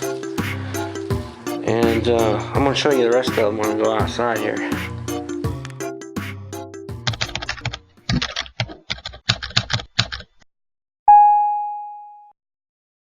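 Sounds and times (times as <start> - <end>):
music: 0.0 - 8.2
typing clicks: 7.0 - 10.3
bell ding: 11.1 - 12.3.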